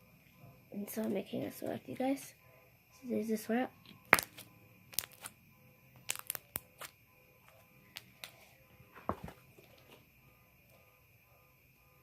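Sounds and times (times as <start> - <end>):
slime clicks and crackles: 4.2 - 5.3, 6.0 - 6.9.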